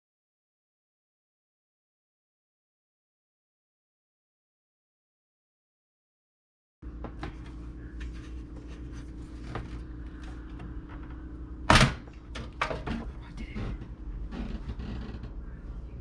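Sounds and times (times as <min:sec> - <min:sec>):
steady low hum: 0:06.8 - 0:16.0.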